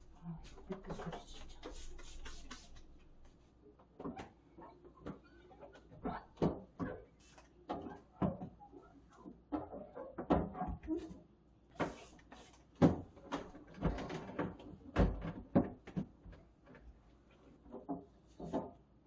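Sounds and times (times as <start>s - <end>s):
rubbing: 0.4s - 3.4s
plastic containers clattering: 12.8s - 16.8s.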